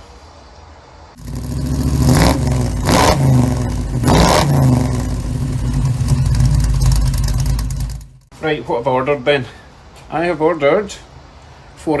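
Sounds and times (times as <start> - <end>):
engine rumbling and revving: 1.2 - 8.3.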